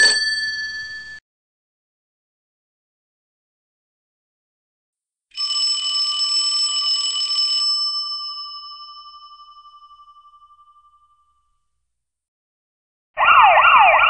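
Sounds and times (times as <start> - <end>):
alarm bell ringing: 0.0 - 1.2, 5.4 - 11.6.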